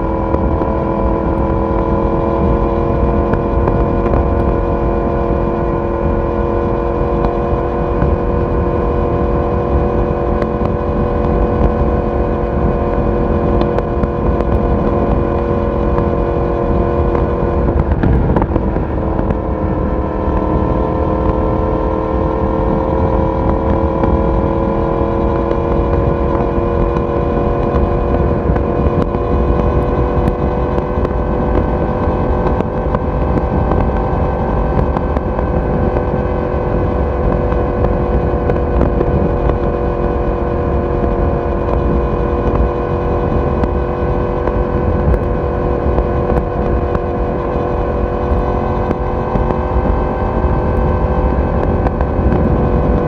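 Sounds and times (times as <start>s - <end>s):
motorcycle engine cruising: 0.0s - 53.0s
wind and road rush: 0.0s - 53.0s.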